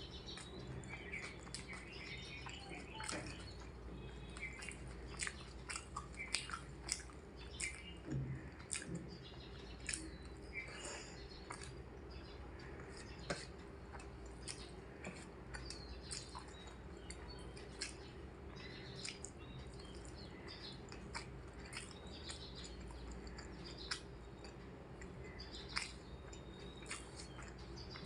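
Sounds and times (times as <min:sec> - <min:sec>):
chewing with wet smacks: 0:00.0 - 0:28.0
faint low hum: 0:00.0 - 0:28.0.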